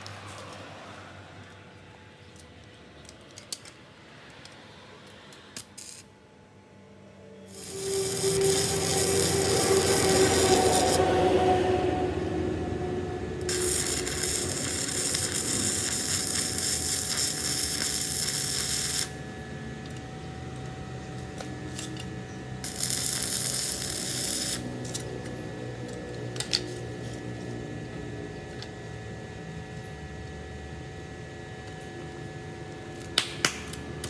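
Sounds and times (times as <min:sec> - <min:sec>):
loud hiss: 0:07.5 - 0:19.2
hydraulic press humming: 0:07.5 - 0:27.2.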